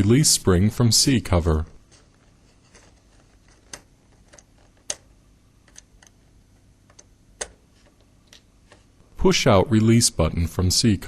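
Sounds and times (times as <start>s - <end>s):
plastic parts clicking together: 2.8s - 5.1s.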